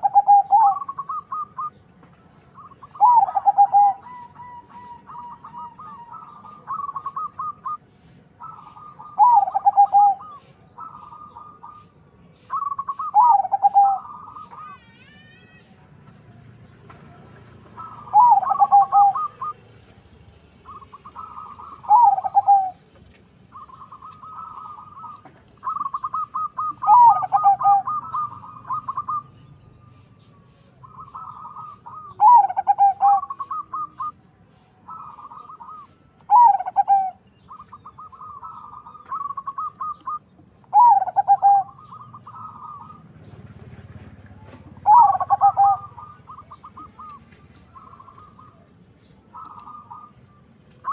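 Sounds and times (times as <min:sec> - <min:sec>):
dove cooing: 0:00.0 - 0:01.8, 0:02.6 - 0:14.9, 0:17.8 - 0:19.7, 0:20.6 - 0:22.8, 0:23.5 - 0:34.2, 0:34.8 - 0:43.1, 0:44.4 - 0:50.9.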